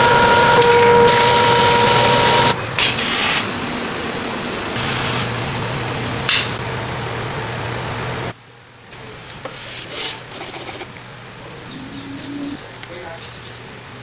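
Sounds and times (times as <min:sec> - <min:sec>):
blade scraping by hand: 0:09.4 - 0:10.9.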